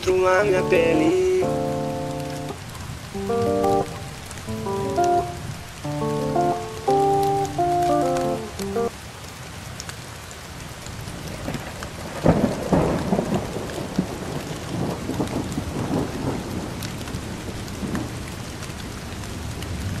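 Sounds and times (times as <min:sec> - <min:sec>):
steady rain: 0:00.0 - 0:20.0
rolling thunder rumbles: 0:11.3 - 0:18.2.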